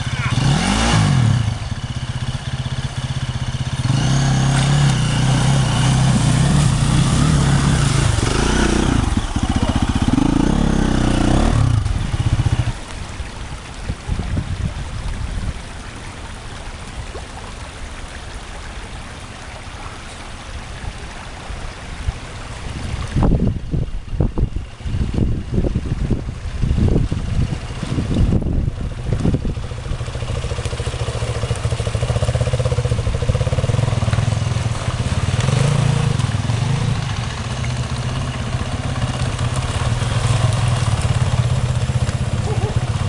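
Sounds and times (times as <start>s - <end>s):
motorcycle engine revving: 0.0s - 12.8s, 29.3s - 43.0s.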